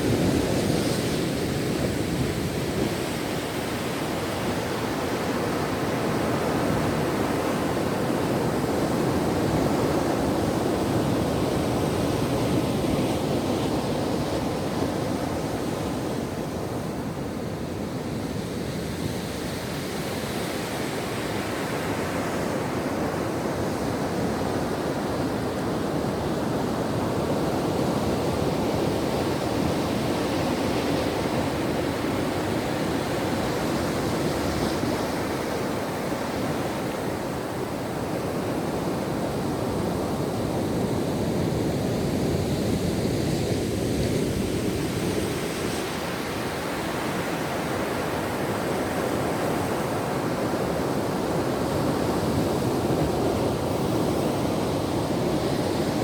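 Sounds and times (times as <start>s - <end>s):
ocean waves washing on shore: 0.0s - 56.0s.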